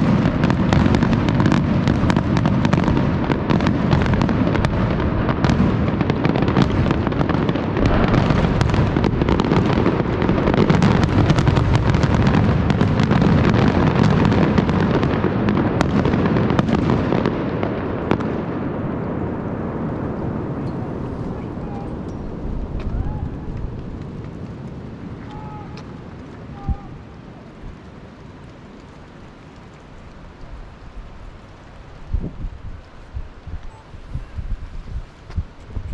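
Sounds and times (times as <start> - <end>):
fireworks bangs and crackles: 0.0 - 35.9
steady low noise: 18.8 - 35.9.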